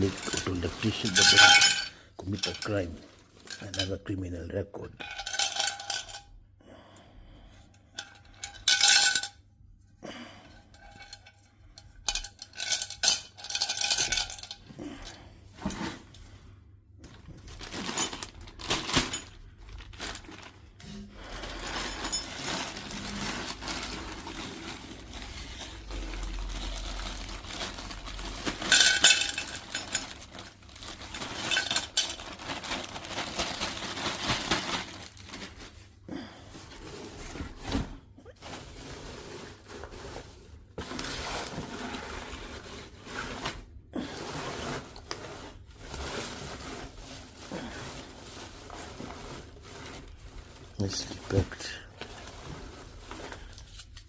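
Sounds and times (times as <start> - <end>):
small metal objects clinking: 0.0 - 4.1, 5.0 - 6.3, 8.0 - 9.4, 21.5 - 24.3, 26.1 - 35.1
rustling handling noise: 0.0 - 6.3, 15.4 - 54.0.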